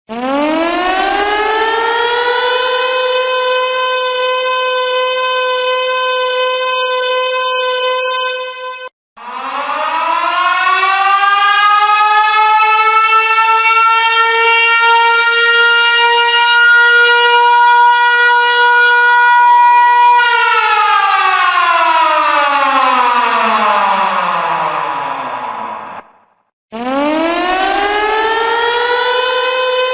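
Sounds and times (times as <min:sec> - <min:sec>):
siren winding up: 0:00.1 - 0:14.0, 0:26.8 - 0:29.9.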